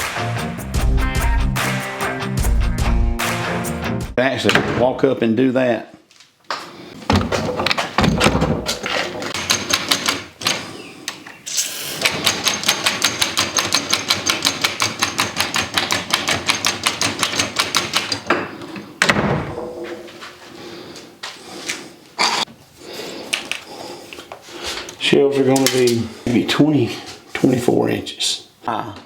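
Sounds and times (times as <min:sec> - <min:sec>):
knocks and scrapes: 0:07.0 - 0:09.8
rapid mechanical clicking: 0:12.0 - 0:18.3.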